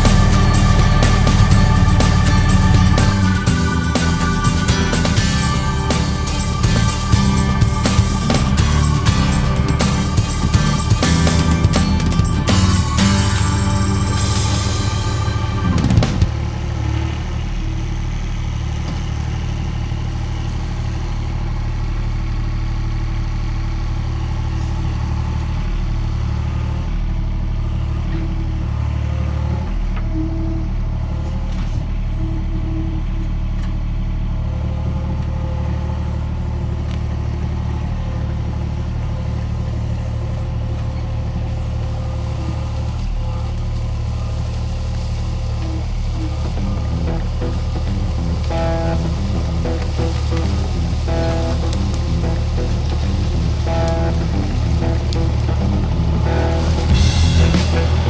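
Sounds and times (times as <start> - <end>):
skid steer engine running: 0.0 - 32.0, 32.7 - 58.0.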